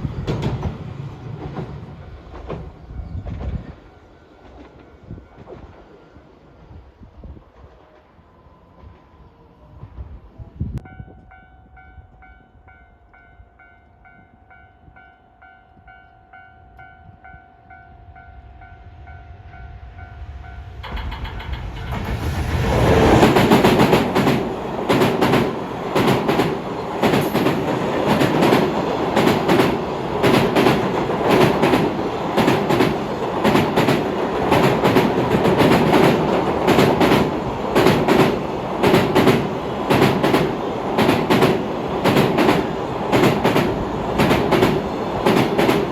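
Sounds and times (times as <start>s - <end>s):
train wheels clattering on rail joints: 0.0s - 5.9s, 20.8s - 45.9s
train passing: 0.0s - 45.9s.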